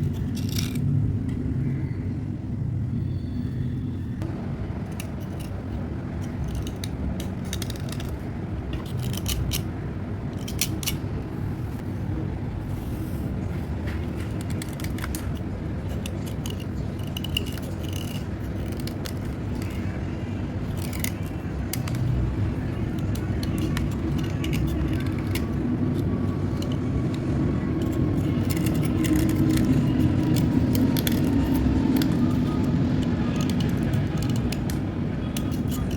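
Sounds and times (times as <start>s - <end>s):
slate pencils scraping and clicking: 0.0s - 0.9s, 4.9s - 9.7s, 10.3s - 11.0s, 13.8s - 35.9s
steady low rumble: 0.0s - 35.9s.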